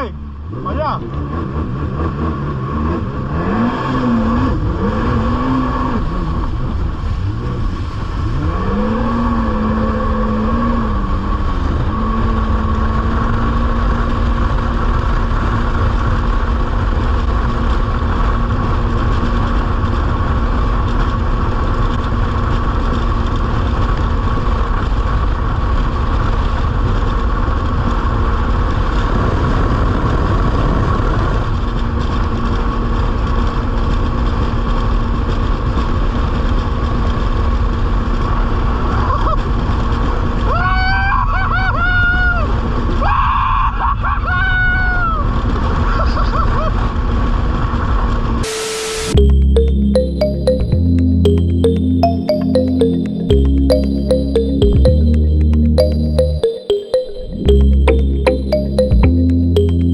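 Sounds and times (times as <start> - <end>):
jet ski engine revving: 0.1 - 11.3.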